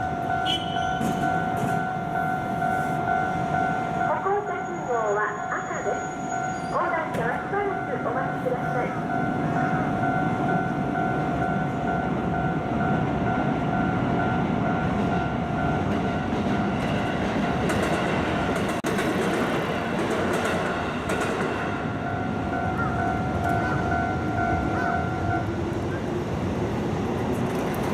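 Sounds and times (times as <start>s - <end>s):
level crossing alarm ringing: 0.0s - 16.8s, 21.7s - 25.6s
train running noise: 0.0s - 27.9s.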